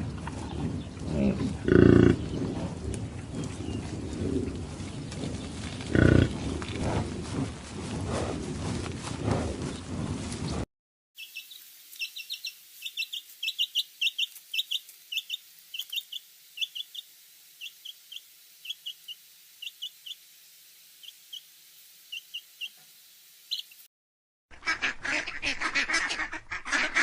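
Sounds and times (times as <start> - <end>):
bird chirping: 11.2 - 20.3, 21.0 - 21.5, 22.1 - 22.8, 23.5 - 23.8.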